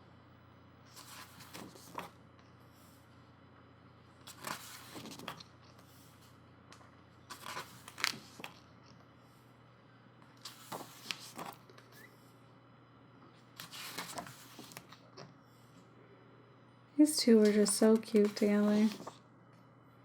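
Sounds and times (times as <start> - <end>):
pages turning: 0.9 - 2.1, 4.3 - 5.5, 7.3 - 8.6, 10.4 - 11.6, 13.6 - 15.0, 17.4 - 19.2.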